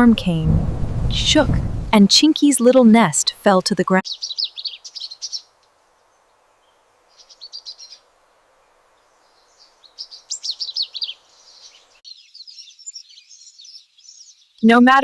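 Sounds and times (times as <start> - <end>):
small bird chirping: 4.0 - 14.7
faint steady hiss: 4.1 - 12.0.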